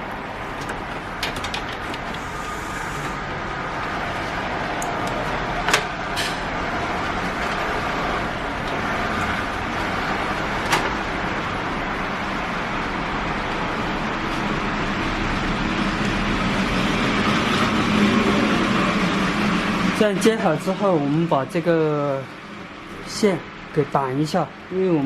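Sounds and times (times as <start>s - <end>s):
steady background noise: 0.0s - 25.0s.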